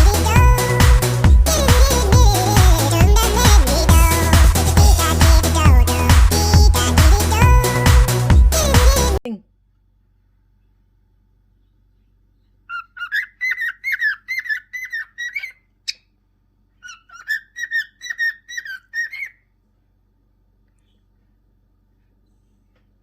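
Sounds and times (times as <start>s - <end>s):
bird chirp: 11.6s - 16.2s, 16.8s - 19.5s.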